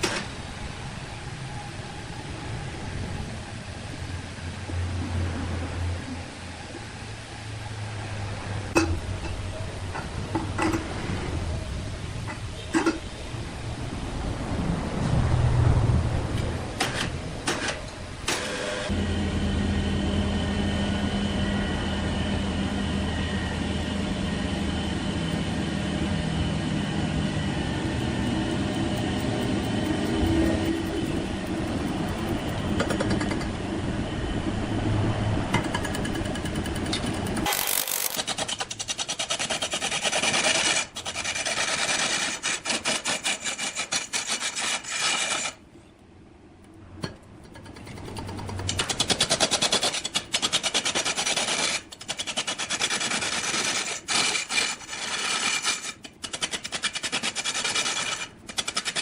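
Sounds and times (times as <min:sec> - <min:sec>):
woodworking machine humming: 0:16.8 - 0:43.8
cutter hissing and ticking: 0:27.8 - 0:33.1, 0:35.6 - 0:41.2.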